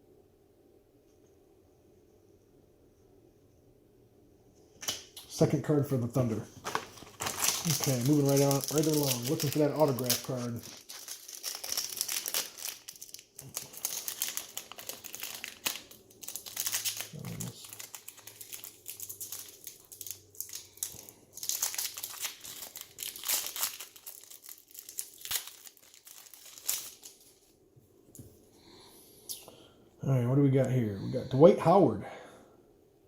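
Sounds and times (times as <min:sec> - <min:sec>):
card pack wrappers crinkling: 0:06.0 - 0:27.5.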